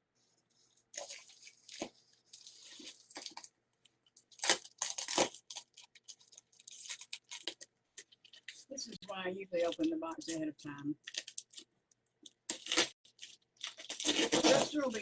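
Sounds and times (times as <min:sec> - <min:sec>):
packing material crunching: 0:00.9 - 0:03.5, 0:04.2 - 0:08.6, 0:11.0 - 0:11.7, 0:12.4 - 0:15.0
cardboard and tape tearing: 0:04.3 - 0:07.6, 0:11.0 - 0:11.6, 0:12.5 - 0:15.0.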